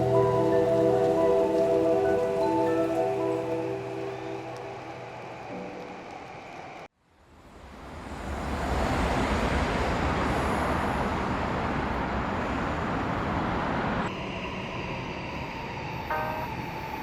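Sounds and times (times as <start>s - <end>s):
train rolling on rails: 0.0s - 6.9s.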